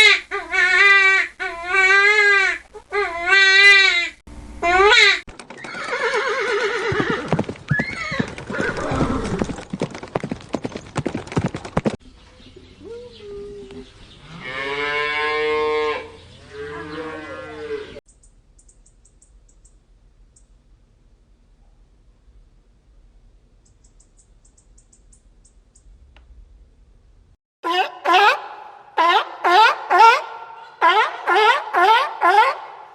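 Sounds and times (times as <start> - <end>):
horse sounds with clicks: 5.3 - 12.0
horse whinnies: 5.5 - 9.6
pitched cry: 27.6 - 32.9.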